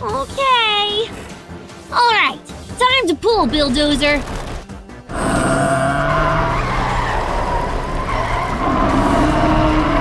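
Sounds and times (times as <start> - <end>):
wheels spinning and skidding: 6.1 - 10.0.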